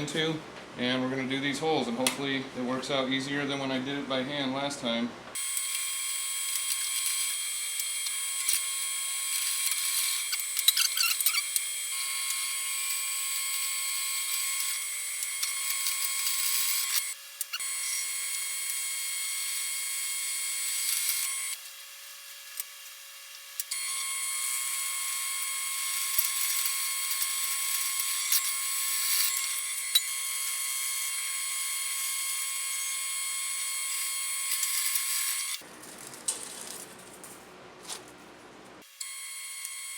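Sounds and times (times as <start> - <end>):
drill bit scraping: 5.4 - 21.6, 23.6 - 37.1.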